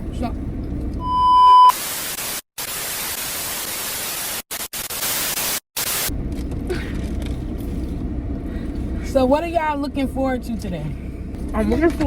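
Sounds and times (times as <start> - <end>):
high beep: 1.0 - 1.8
tv static hiss: 1.7 - 6.1.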